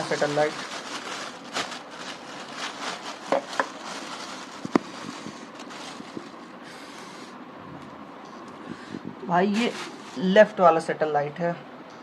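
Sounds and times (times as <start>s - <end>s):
cable rustling: 0.0s - 6.6s, 9.5s - 10.4s.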